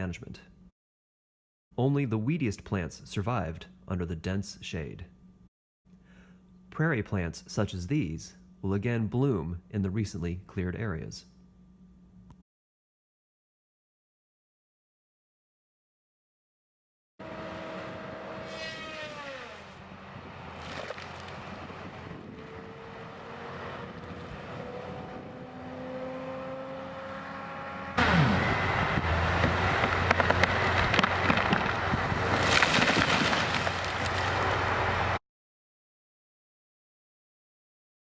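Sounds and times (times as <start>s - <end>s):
rising whine: 17.2s - 32.4s
machinery engine running: 27.6s - 35.2s
loud rough machine noise: 28.0s - 35.2s.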